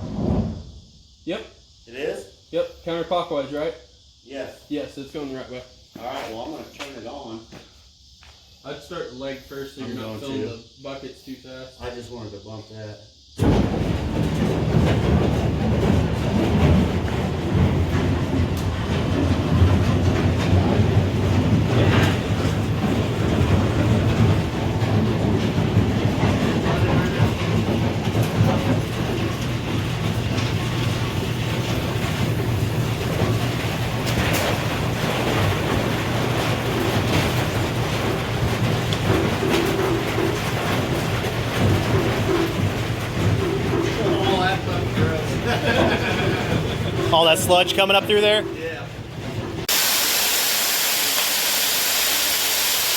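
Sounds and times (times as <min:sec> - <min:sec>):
auger rattling clatter: 0:13.4 - 0:49.7.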